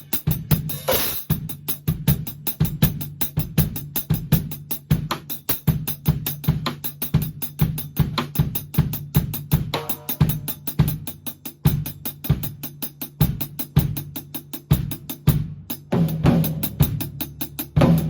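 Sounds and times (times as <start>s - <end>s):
muffled hi-hat strokes: 0.0s - 14.6s
bass drum: 0.0s - 18.0s
snare drum: 0.4s - 1.5s, 9.6s - 10.6s.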